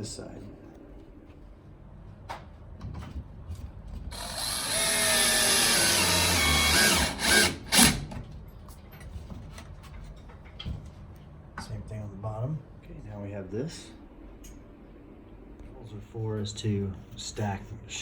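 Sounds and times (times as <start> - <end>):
cordless drill driving a screw: 4.1 - 8.1.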